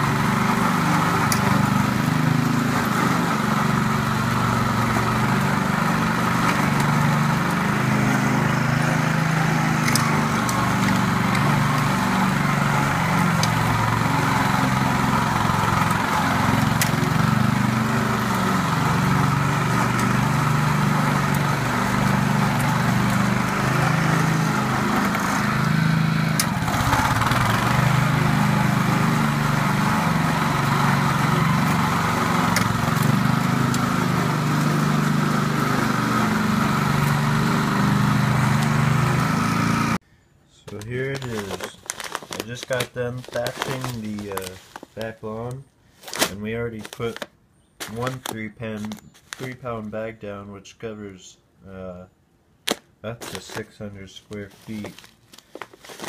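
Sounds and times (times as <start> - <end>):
lawn mower engine running: 0.0 - 40.0, 40.7 - 45.0.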